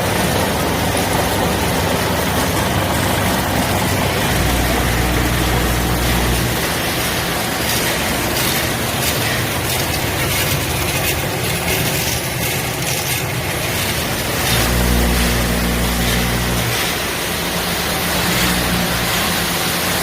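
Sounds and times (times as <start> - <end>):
low motor hum: 0.0 - 20.0
machines clattering and hissing: 0.0 - 20.0.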